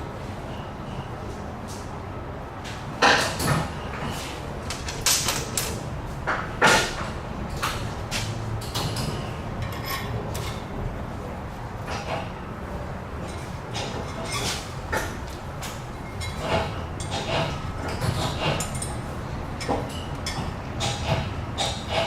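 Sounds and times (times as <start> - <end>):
knocks and clatter of tools: 3.0 - 10.6.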